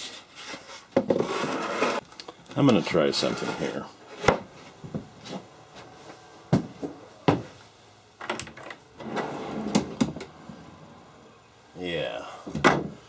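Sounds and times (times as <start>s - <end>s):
wood scraping: 0.4s - 2.0s, 2.6s - 5.5s.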